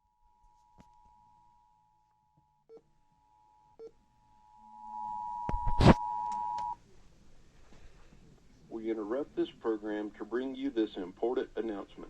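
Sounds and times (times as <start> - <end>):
two-tone alert signal: 4.7 - 6.8.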